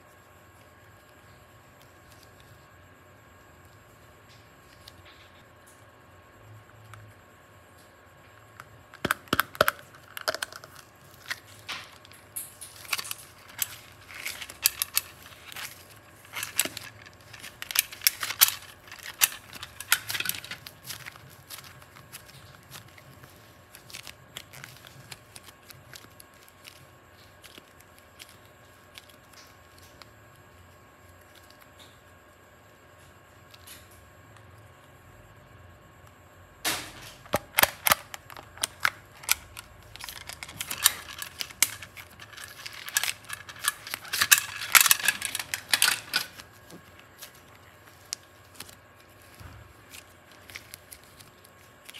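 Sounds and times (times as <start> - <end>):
crinkling crackling clicks: 6.7 - 32.2, 35.9 - 51.9.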